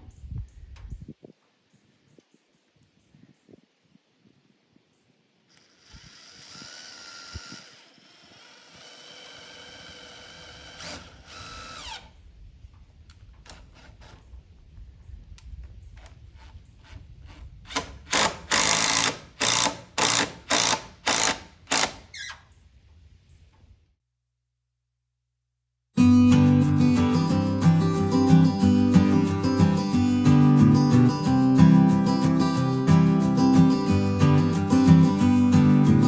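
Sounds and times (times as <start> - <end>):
power drill motor whine: 5.5 - 12.1, 17.7 - 21.9
power drill short bursts: 5.5 - 12.1, 17.7 - 22.4.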